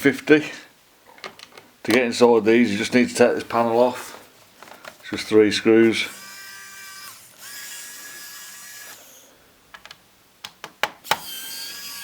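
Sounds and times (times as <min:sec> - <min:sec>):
electric screwdriver whining: 0:06.1 - 0:09.3, 0:11.0 - 0:12.0.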